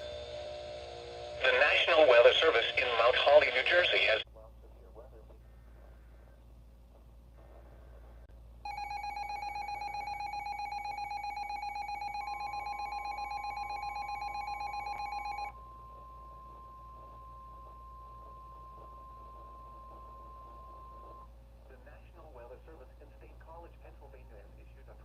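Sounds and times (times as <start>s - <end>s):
rapidly pulsing electronic alarm tone: 8.6s - 21.3s
steady warning alert tone: 8.7s - 21.3s.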